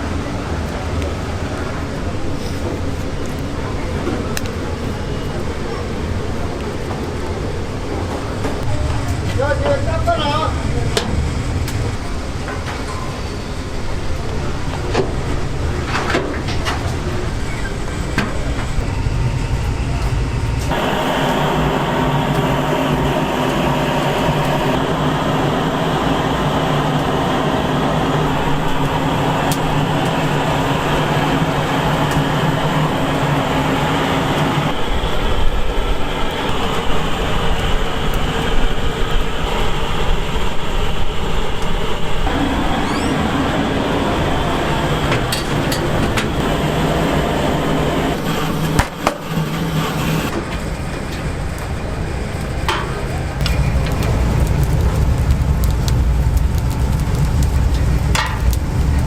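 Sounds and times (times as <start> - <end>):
machine rumble with hum: 14.2 - 59.0.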